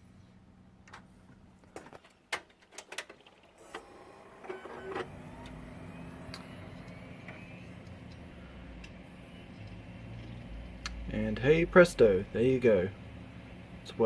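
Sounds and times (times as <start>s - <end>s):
computer fans humming: 3.2s - 14.0s.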